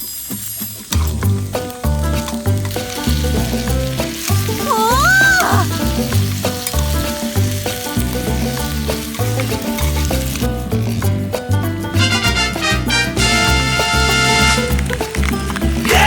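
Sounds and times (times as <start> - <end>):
food sizzling in a pan: 0.0 - 15.2
music with pulsing bass beat: 1.0 - 4.6, 5.6 - 16.0.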